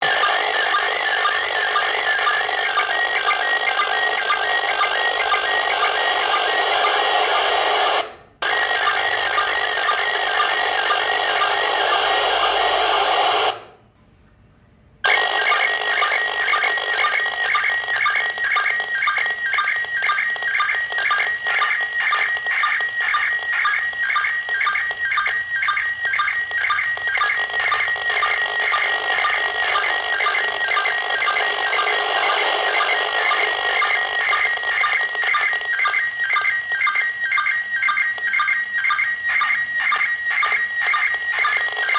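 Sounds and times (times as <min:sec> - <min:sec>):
warbling radio signal tones: 0:00.0 - 0:13.6, 0:15.1 - 0:41.9
line-sync pulses: 0:00.0 - 0:13.7, 0:15.0 - 0:41.9
radio noise hiss: 0:05.5 - 0:13.7, 0:28.4 - 0:34.2.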